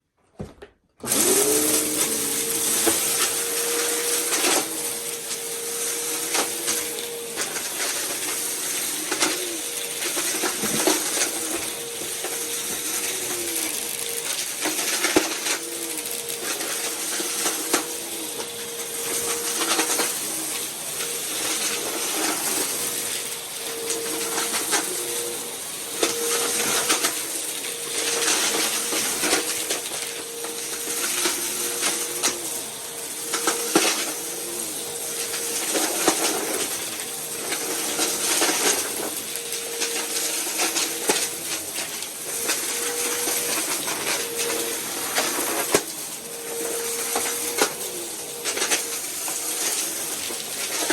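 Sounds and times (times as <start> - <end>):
vacuum cleaner motor whine: 1.0 - 50.9
debris crackling in vacuum: 1.1 - 50.9.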